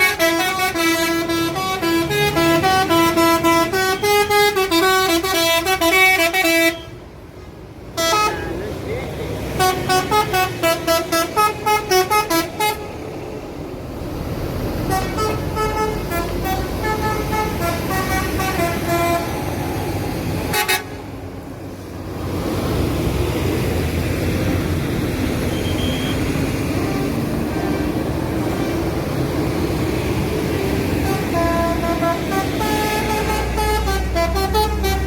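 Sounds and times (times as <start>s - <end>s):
musical air horn playing notes: 14.9s - 19.3s, 31.0s - 35.0s.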